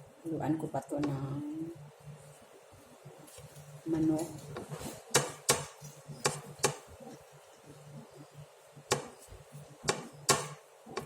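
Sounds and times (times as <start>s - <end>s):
utensils knocking on board or pan: 5.1s - 6.8s, 8.9s - 9.1s, 9.9s - 11.0s.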